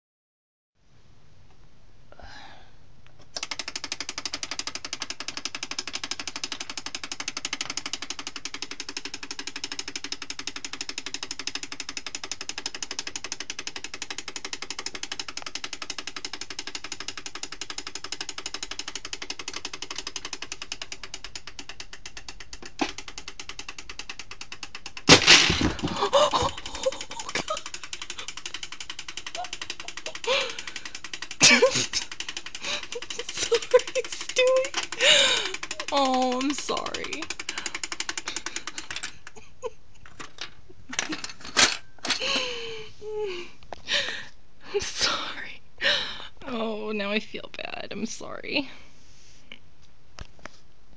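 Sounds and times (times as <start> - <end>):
wind-up timer ticking: 3.4 - 25.1, 26.0 - 39.8
game pieces clattering: 3.5 - 39.4, 40.0 - 42.5.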